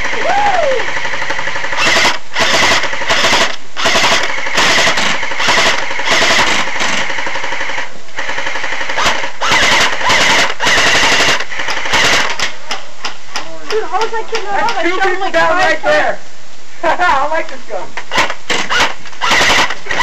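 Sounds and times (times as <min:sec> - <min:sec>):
airsoft gun firing bursts: 0:00.9 - 0:12.5, 0:18.1 - 0:20.0.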